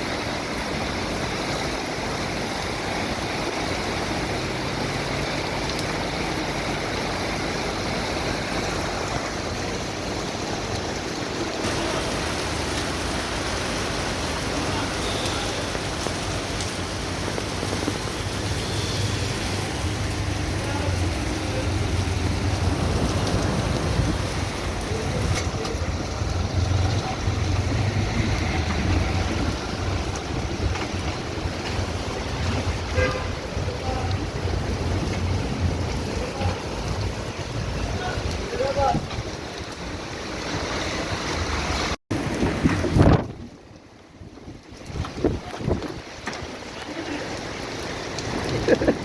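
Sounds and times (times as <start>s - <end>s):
heavy rain: 0.0s - 49.0s
running water: 0.0s - 49.0s
wind gusts buffeting microphone: 19.5s - 41.4s, 42.1s - 46.8s.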